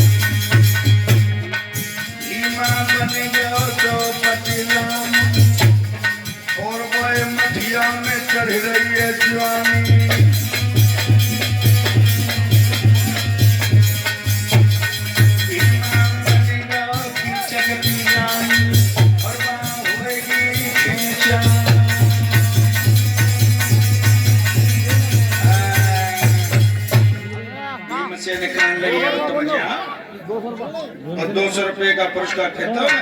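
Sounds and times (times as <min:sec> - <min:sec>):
deep drum beat: 0:00.0 - 0:01.5, 0:02.6 - 0:27.4
shaker percussion: 0:00.0 - 0:27.3
melodic folk instrument: 0:00.0 - 0:30.2.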